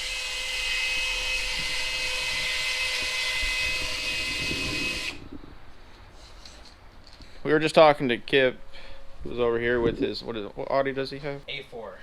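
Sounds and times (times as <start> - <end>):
power drill whining: 0.0 - 5.3.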